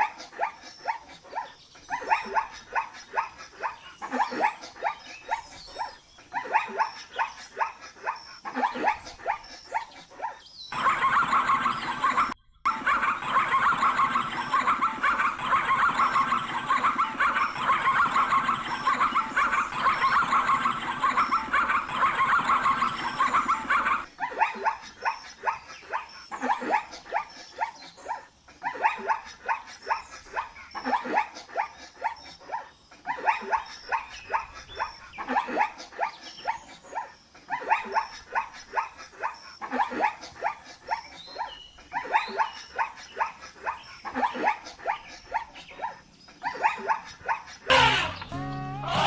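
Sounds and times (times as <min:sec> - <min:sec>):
steady animal call: 0:02.0 - 0:24.1, 0:47.2 - 0:49.0
animal barking: 0:05.8 - 0:25.2, 0:45.8 - 0:49.0.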